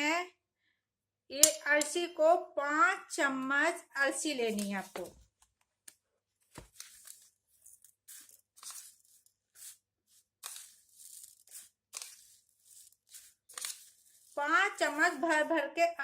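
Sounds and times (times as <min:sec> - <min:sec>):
dry seeds rustling and pouring: 0:06.7 - 0:15.4.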